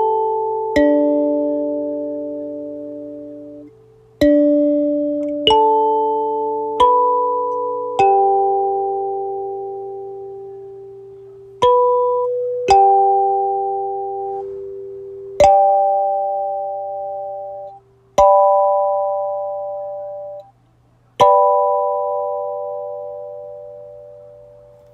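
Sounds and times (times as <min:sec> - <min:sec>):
kalimba chords ringing: 0:00.0 - 0:20.4, 0:21.2 - 0:24.9.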